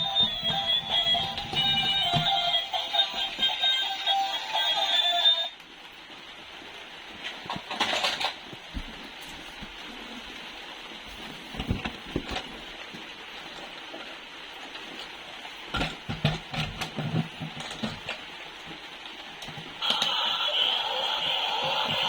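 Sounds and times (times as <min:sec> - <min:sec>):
steady hiss: 0:00.0 - 0:22.0
plastic toys clicking and knocking: 0:07.5 - 0:08.4, 0:15.8 - 0:18.2.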